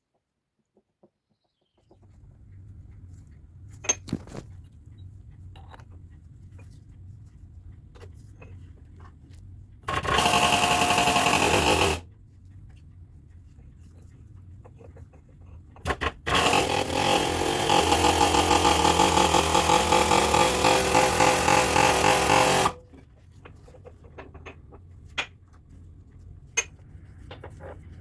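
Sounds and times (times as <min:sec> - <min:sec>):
power tool pulsing: 0:09.9 - 0:12.0, 0:16.2 - 0:22.8.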